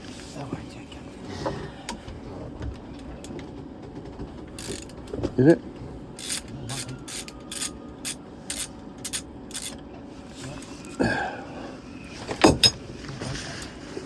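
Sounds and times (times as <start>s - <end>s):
hand ratchet clicking: 4.6s - 5.0s, 6.2s - 9.8s.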